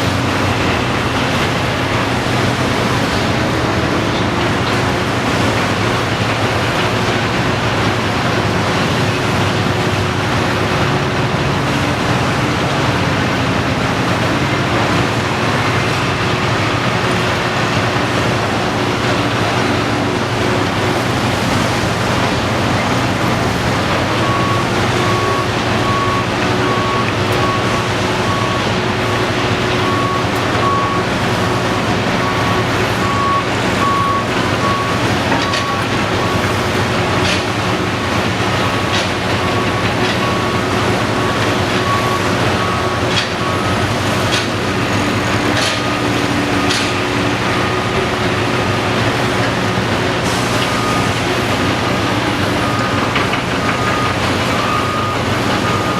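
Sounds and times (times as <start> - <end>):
excavator diesel engine and hydraulics: 0.0 - 55.9.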